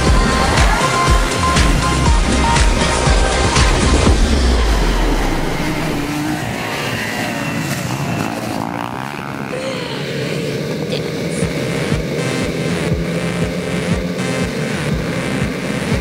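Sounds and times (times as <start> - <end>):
music beat: 0.0 - 7.1, 11.2 - 16.0
quad engines revving: 0.0 - 16.0.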